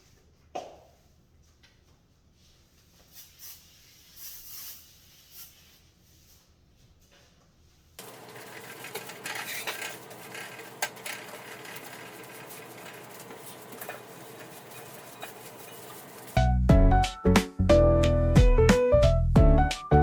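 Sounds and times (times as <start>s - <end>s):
dishes and cutlery clinking: 8.0s - 16.4s.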